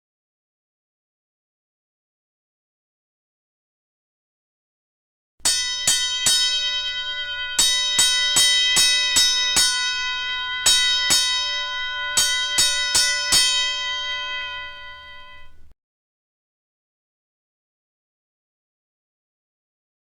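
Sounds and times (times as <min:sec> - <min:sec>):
metal bell ringing: 0:05.4 - 0:15.7.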